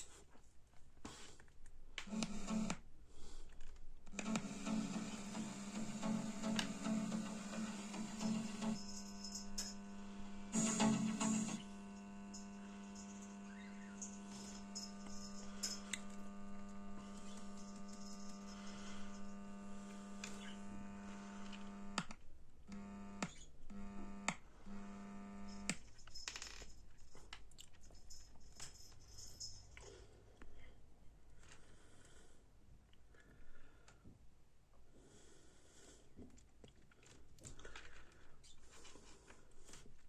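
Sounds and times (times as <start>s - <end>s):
amplifier mains hum: 2.0s - 2.8s, 4.0s - 25.8s
clicks: 3.6s - 8.8s.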